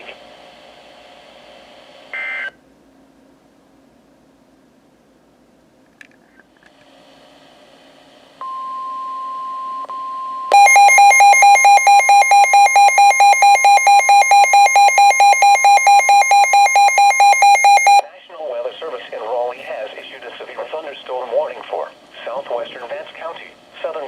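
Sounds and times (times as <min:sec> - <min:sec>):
rapid alert beeping: 0:10.5 - 0:18.0.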